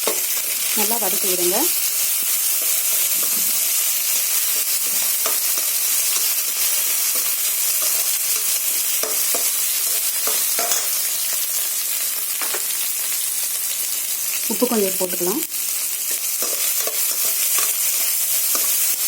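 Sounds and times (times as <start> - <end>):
spoon stirring and scraping: 0.0 - 1.2, 1.8 - 12.8, 16.0 - 19.0
vegetables sizzling in oil: 0.0 - 19.0.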